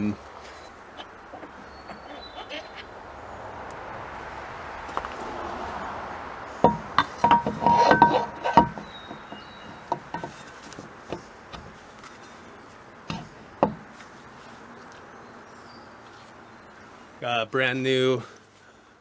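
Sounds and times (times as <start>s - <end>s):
metal parts and tools clinking: 6.6s - 11.9s.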